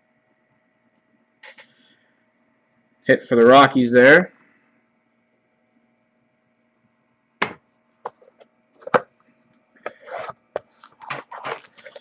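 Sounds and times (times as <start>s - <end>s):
cardboard crackling and rustling: 10.6s - 12.0s.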